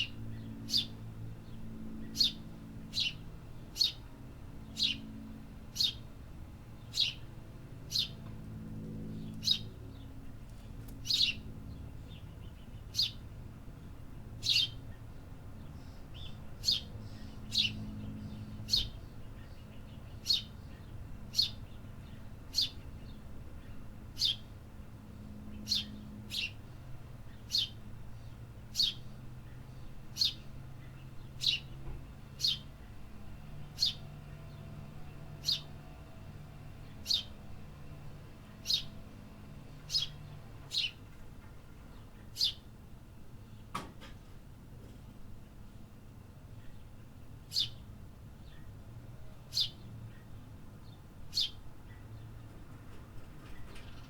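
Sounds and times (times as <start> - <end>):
bird chirping: 0.0 - 3.2, 3.8 - 4.0, 4.6 - 5.1, 6.8 - 7.3, 7.9 - 8.2, 11.0 - 13.2, 14.4 - 24.5, 27.3 - 31.8, 32.4 - 32.7, 35.4 - 35.7, 36.8 - 37.4, 38.6 - 39.0, 39.8 - 41.0, 41.9 - 42.7, 47.5 - 47.8, 49.5 - 52.3
low steady background hum: 0.0 - 54.0.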